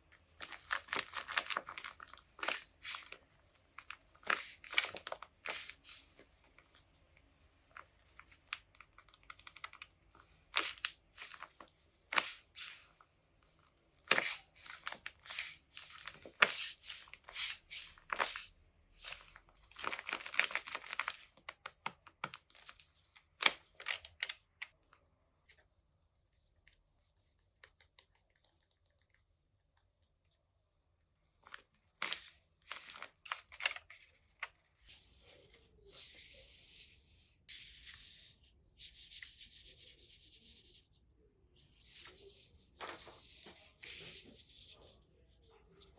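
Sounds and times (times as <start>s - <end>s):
paper rustling and tearing: 0.4s - 3.2s, 10.6s - 12.9s, 14.1s - 21.4s, 32.1s - 36.5s.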